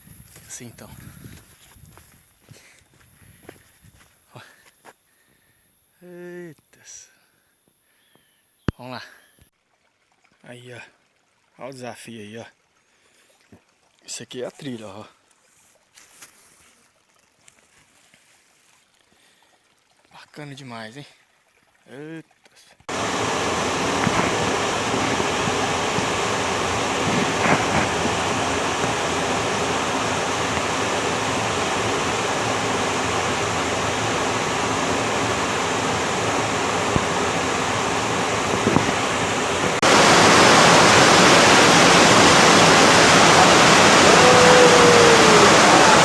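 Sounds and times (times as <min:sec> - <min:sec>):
waterfall rushing: 0:22.9 - 0:46.0
short falling whistle: 0:40.6 - 0:46.0.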